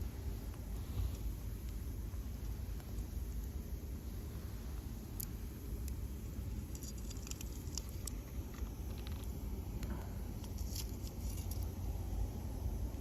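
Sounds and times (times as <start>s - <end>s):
campfire crackling: 4.8s - 11.7s.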